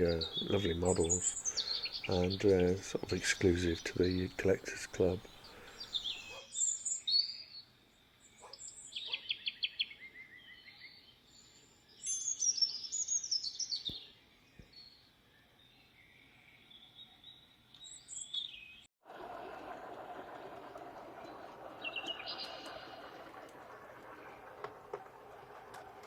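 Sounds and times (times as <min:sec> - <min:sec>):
songbirds trilling: 0:00.0 - 0:07.6, 0:21.1 - 0:25.6.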